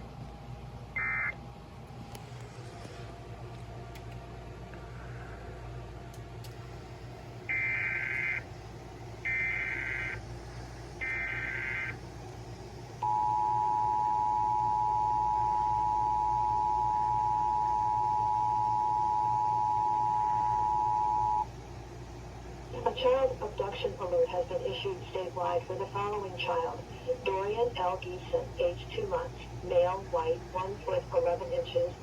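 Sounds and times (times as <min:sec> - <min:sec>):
radio hum and hiss: 0:00.9 - 0:01.4, 0:06.5 - 0:32.0
warbling digital data bursts: 0:11.0 - 0:12.0.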